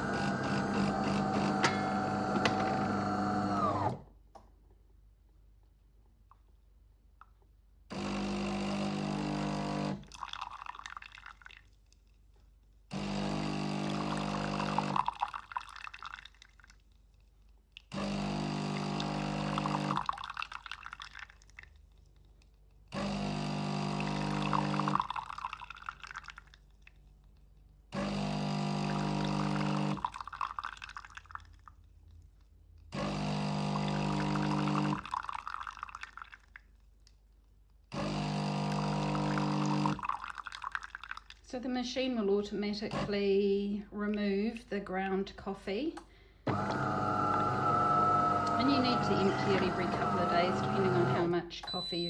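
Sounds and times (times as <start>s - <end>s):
coffee machine pump buzzing: 0.0s - 4.0s, 7.9s - 10.1s, 12.9s - 15.2s, 18.0s - 20.1s, 23.0s - 25.2s, 28.0s - 30.1s, 33.0s - 35.1s, 38.0s - 40.0s, 46.5s - 51.9s
coffee pouring and dripping: 9.9s - 12.3s, 13.8s - 17.0s, 19.0s - 22.5s, 24.0s - 27.5s, 28.9s - 32.0s, 33.8s - 36.8s, 39.0s - 41.5s.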